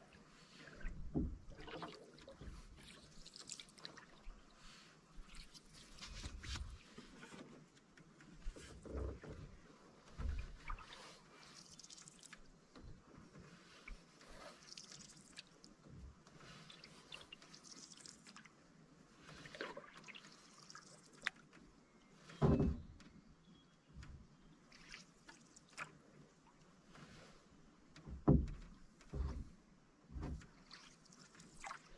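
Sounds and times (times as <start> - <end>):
small water splashes: 0.0 - 6.8, 10.2 - 12.5, 13.6 - 15.8, 16.4 - 18.6, 19.2 - 21.5, 24.6 - 26.6, 30.5 - 31.9
water dripping off paddle: 10.6 - 12.5, 16.4 - 18.5, 19.4 - 21.5
soft knocks: 28.0 - 29.5.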